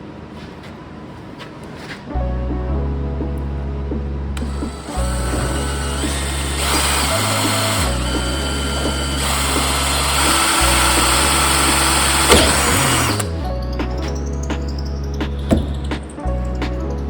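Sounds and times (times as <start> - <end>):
background music with bass line: 2.1 - 17.0
power tool running: 4.4 - 13.3.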